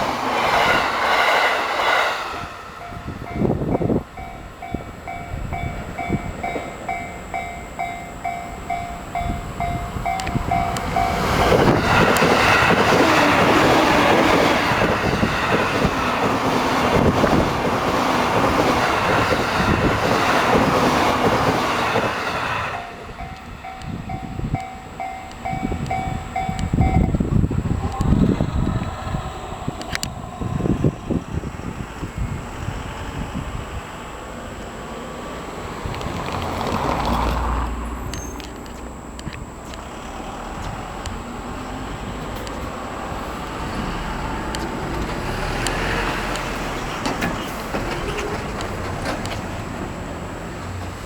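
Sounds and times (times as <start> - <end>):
train rumble and clatter: 0.0 - 51.0
level crossing warning bell: 2.2 - 31.6, 37.8 - 44.6.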